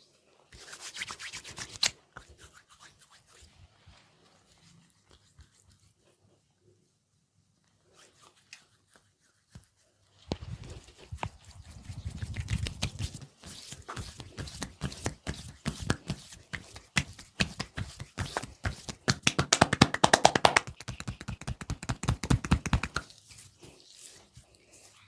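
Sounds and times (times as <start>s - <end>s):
hands tapping and scratching hair: 10.3s - 24.4s.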